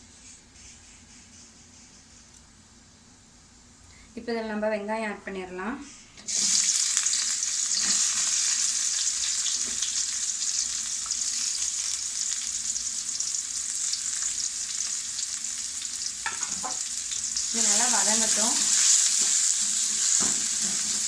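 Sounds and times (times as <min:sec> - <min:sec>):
onions sizzling in hot oil: 0:06.3 - 0:21.0.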